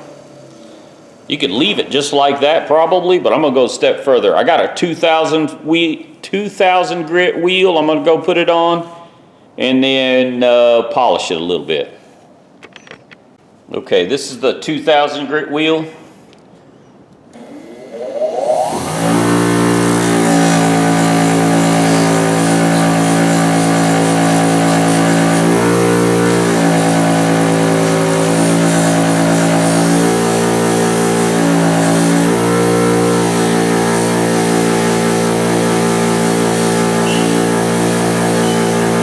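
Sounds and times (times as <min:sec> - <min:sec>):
polishing machine motor hum: 0:17.4 - 0:39.0.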